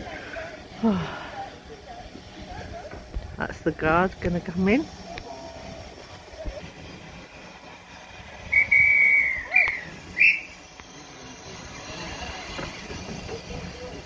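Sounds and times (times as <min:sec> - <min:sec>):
guard's whistle blasts: 0:08.5 - 0:10.5.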